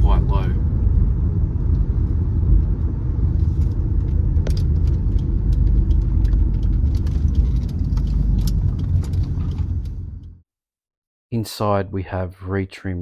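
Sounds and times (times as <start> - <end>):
car engine and road rumble: 0.0 - 10.5
light ticks and rattles: 3.5 - 10.3.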